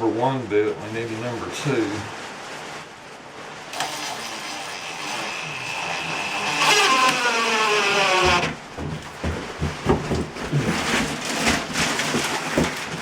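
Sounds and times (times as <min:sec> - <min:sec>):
power drill motor whine: 0:03.8 - 0:08.6.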